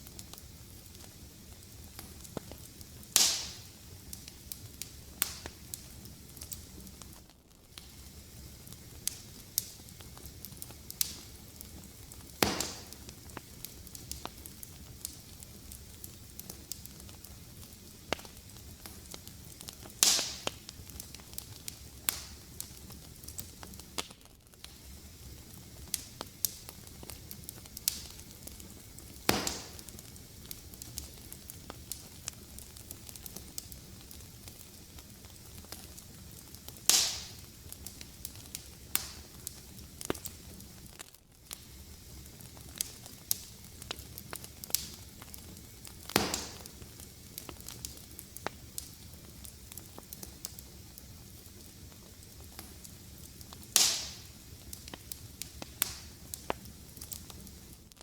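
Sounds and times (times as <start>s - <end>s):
fire crackling: 0.0s - 58.0s
loud sharp pop of fire: 2.4s - 3.8s, 4.8s - 5.8s, 12.0s - 14.4s, 19.8s - 21.3s, 22.0s - 22.7s, 27.8s - 31.1s, 36.8s - 37.5s, 38.9s - 40.3s, 45.6s - 48.9s, 53.7s - 54.4s, 55.4s - 56.5s.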